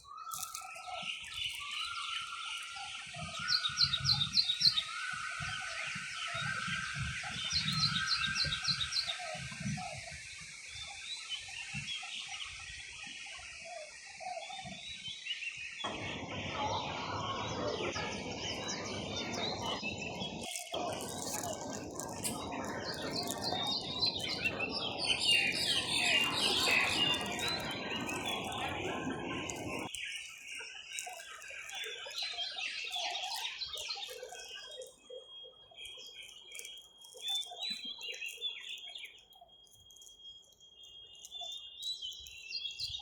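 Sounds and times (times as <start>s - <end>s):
small birds chirping: 0.0s - 43.0s
high hiss of nature ambience: 0.1s - 34.8s
broad rushing noise: 15.9s - 29.9s.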